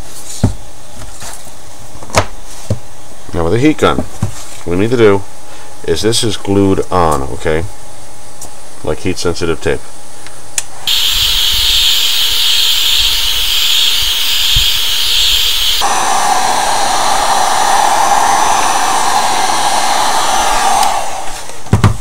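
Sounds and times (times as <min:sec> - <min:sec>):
heat gun blowing: 0:10.9 - 0:16.7.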